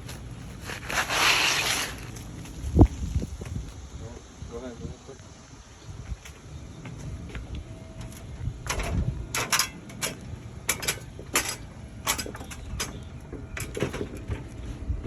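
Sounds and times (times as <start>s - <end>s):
scraping on shingle roof: 0.0s - 3.5s
low wind rumble: 0.0s - 15.0s.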